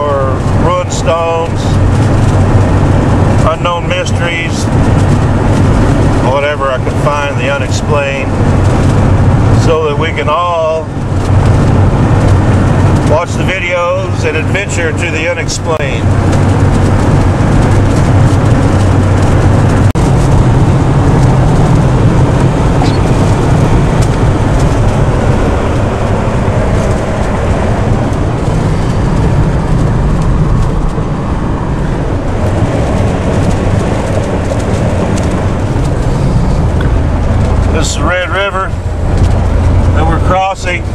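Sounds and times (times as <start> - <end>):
car road noise: 0.0 - 40.9.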